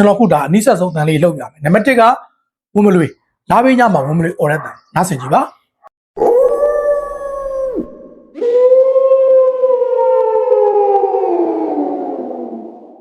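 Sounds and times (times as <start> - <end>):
man imitating wolf howl: 6.2 - 12.9.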